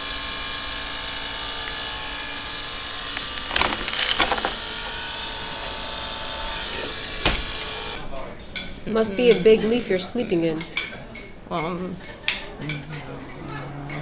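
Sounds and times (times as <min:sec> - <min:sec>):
mechanical motor hum: 0:00.0 - 0:08.0
clattering: 0:02.9 - 0:05.0.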